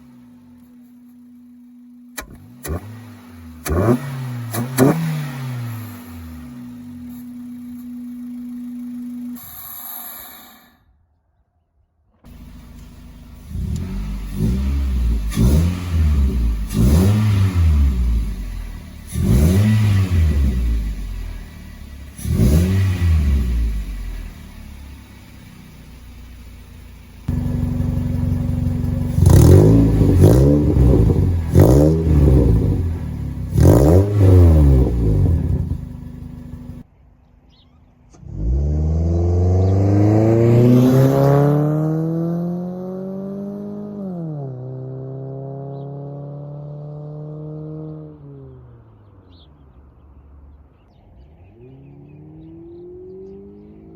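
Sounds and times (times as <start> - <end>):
car engine revving: 0.0 - 10.4, 12.3 - 36.8, 38.0 - 53.9.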